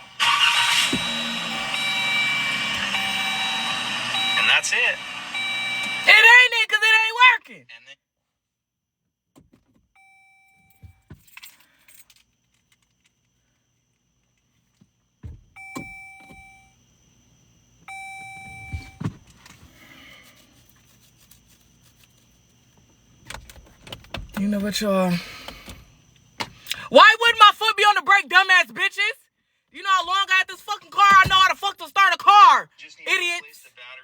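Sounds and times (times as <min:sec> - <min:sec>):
car dashboard chime: 0:00.1 - 0:06.2, 0:15.6 - 0:16.7, 0:17.9 - 0:19.0
keys rattling: 0:10.6 - 0:13.1.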